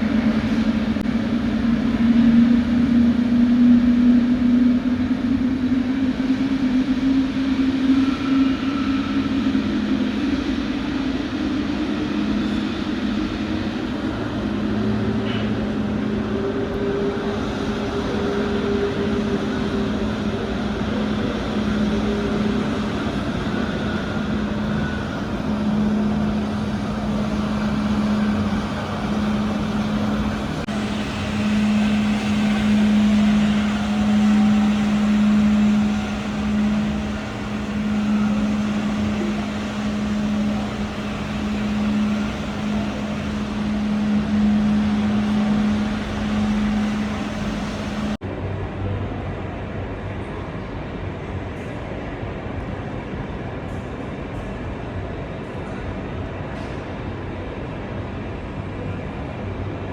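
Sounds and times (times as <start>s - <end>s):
jet engines idling: 0.0s - 49.4s.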